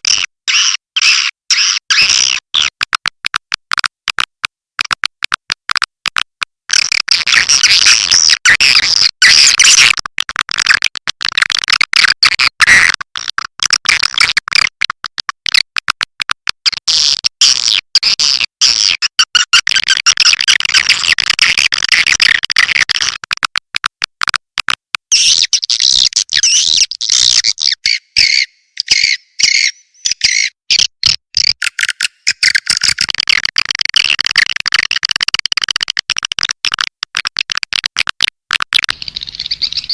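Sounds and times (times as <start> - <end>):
swiftlets chirping and twittering: 25.1 - 30.6, 39.0 - 39.9.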